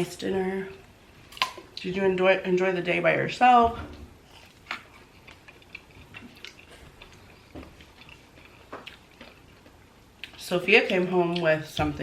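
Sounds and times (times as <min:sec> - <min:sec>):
person chewing food: 0:04.2 - 0:11.5.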